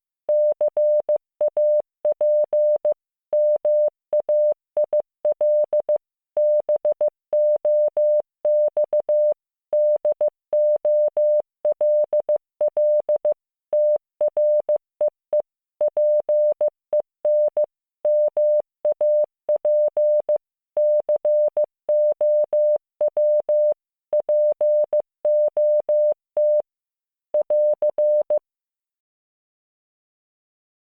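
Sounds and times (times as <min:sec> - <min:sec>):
morse code tone: 0:17.3 - 0:26.6, 0:27.4 - 0:28.4.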